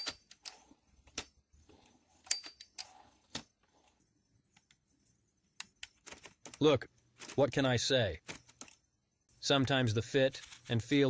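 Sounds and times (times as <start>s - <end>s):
typewriter mechanism clicks: 0.0s - 0.6s.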